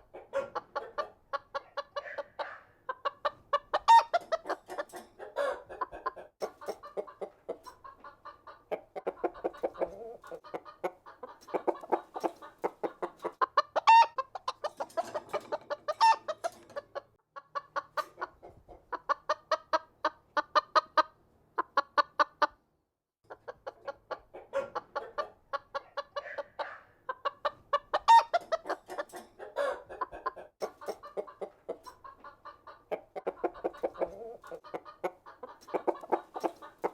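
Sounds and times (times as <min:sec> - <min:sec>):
chickens clucking: 0:00.0 - 0:22.6, 0:23.3 - 0:36.9
high chicken calls: 0:00.1 - 0:04.6, 0:05.2 - 0:07.2, 0:07.8 - 0:15.2, 0:24.4 - 0:28.8, 0:29.4 - 0:36.8.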